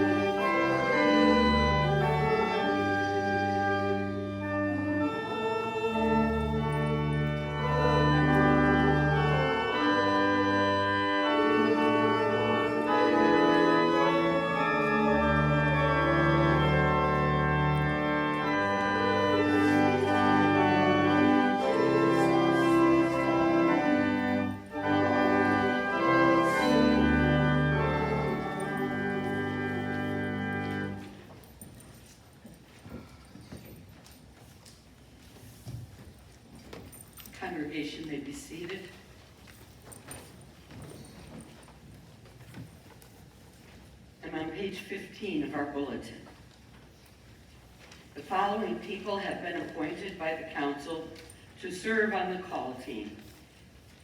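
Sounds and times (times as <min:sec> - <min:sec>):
church organ playing a hymn: 0:00.0 - 0:31.5, 0:48.2 - 0:53.4.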